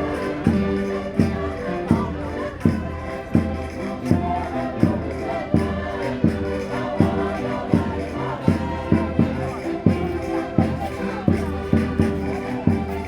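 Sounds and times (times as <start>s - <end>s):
concertinas playing chords: 0.0s - 13.0s.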